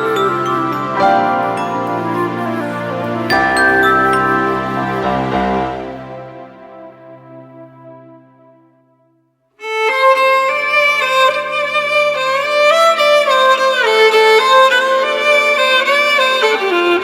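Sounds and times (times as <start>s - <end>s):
slow gliding instrumental melody: 0.0s - 9.0s
held low note: 1.2s - 8.0s.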